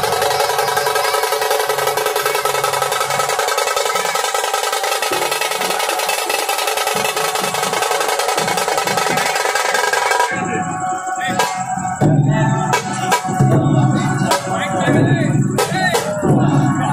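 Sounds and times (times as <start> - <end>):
fast drum roll: 0.0 - 10.4.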